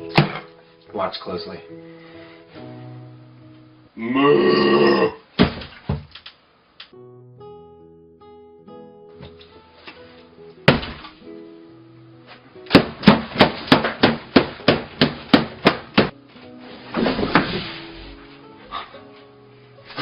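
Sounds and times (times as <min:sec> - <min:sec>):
background music: 0:00.0 - 0:05.0, 0:06.9 - 0:20.0
sharp knocks: 0:12.7 - 0:16.2.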